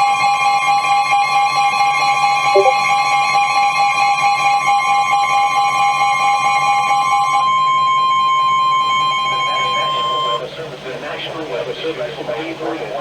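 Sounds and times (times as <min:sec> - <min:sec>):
electronic alert tone: 0:02.6 - 0:02.8.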